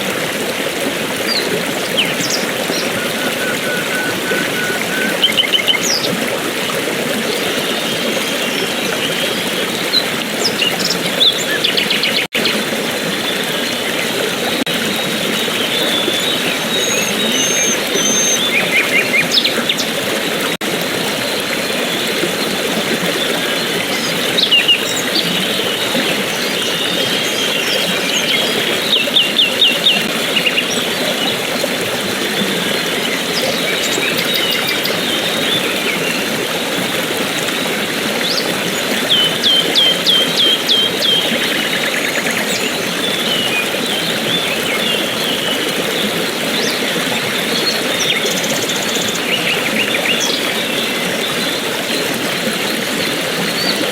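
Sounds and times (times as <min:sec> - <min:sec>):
rushing water: 0:00.0 - 0:53.9
birds chirping: 0:01.3 - 0:06.3, 0:13.2 - 0:20.6.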